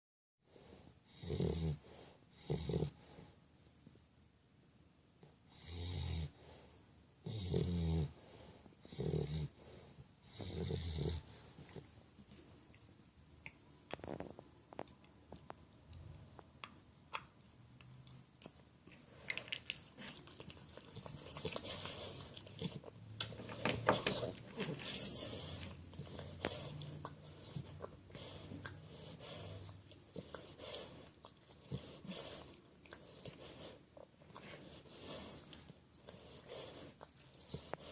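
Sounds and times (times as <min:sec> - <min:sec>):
puppy snoring: 0:00.5 - 0:03.4, 0:05.2 - 0:11.9, 0:20.0 - 0:37.9.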